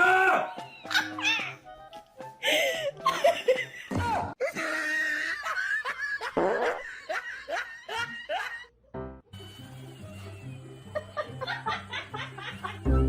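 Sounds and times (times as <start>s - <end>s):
people laughing hard: 2.4s - 8.7s, 10.1s - 13.0s.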